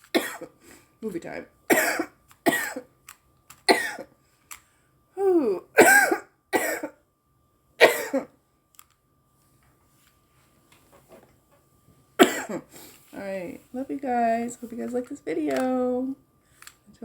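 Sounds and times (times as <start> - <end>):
woman coughing hard: 0.1 - 0.5, 1.7 - 2.9, 3.7 - 4.1, 5.7 - 7.0, 7.8 - 8.4, 12.2 - 12.7.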